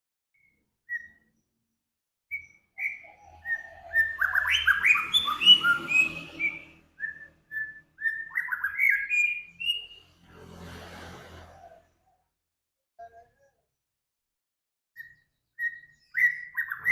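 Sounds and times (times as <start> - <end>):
songbird whistling: 0.4 - 1.5, 2.3 - 10.0, 15.0 - 16.9.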